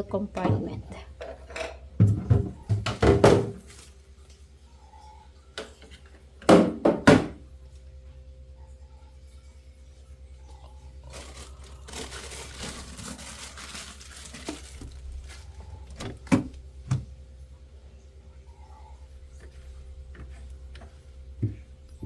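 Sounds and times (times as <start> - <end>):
plastic crinkling and rustling: 3.4 - 4.4, 11.0 - 16.7.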